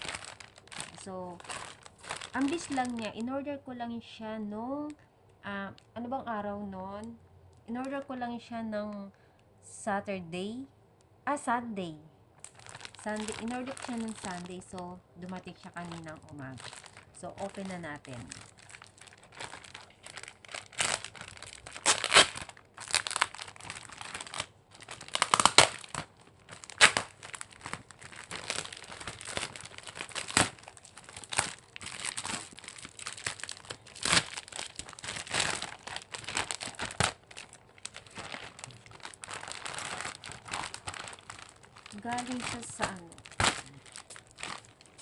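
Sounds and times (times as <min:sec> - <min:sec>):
loud plastic crackles: 0:00.0 - 0:03.3, 0:12.4 - 0:45.0
packaging crinkling and tearing: 0:00.0 - 0:03.3, 0:12.4 - 0:45.0.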